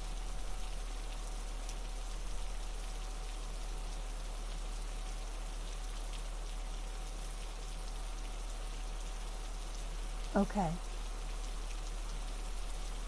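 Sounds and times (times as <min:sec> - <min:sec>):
rain-like patter of water: 0:00.0 - 0:13.0.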